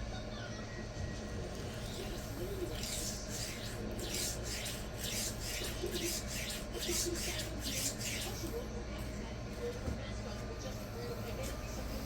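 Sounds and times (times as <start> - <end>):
knife scraping on sharpening stone: 2.8 - 8.4.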